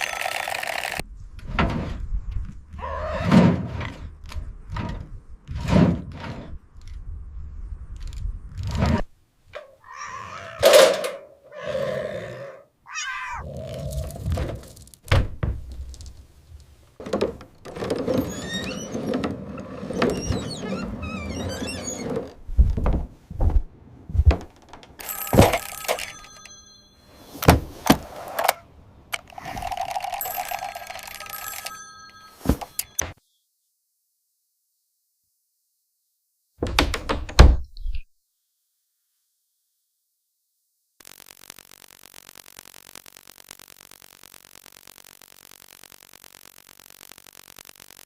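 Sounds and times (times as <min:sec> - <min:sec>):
bell-like ringing: 0:25.0 - 0:27.2, 0:30.1 - 0:33.0.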